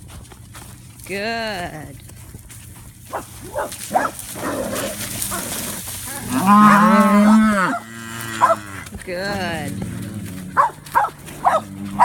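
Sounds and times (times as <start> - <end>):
cow mooing: 4.0 - 12.0.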